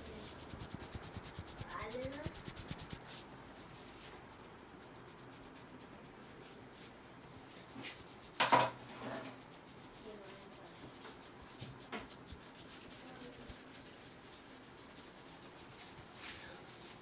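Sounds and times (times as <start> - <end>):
hands rubbing head: 0.0 - 17.0.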